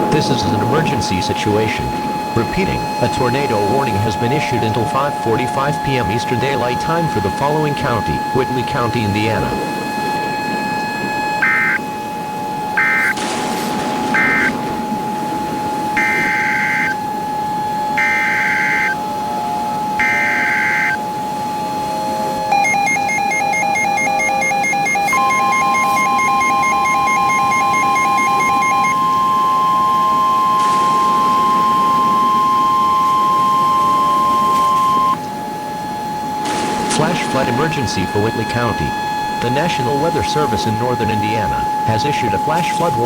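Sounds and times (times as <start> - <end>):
rapid pulsing electronic beep: 0.0 - 9.7, 12.7 - 13.2, 22.6 - 35.2
screeching data tone bursts: 0.0 - 13.2, 15.9 - 19.1, 19.8 - 21.1, 22.5 - 43.0
low hum: 0.0 - 22.5, 25.1 - 43.0.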